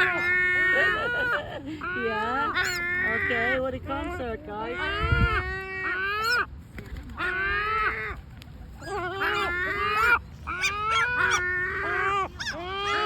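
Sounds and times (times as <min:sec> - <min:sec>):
gulls calling: 0:00.0 - 0:03.8, 0:08.8 - 0:13.0.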